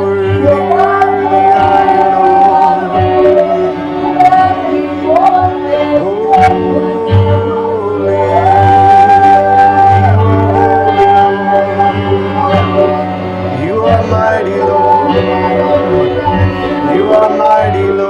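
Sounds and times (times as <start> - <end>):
worship singing: 0.0 - 18.0
steady low drone: 8.3 - 17.1.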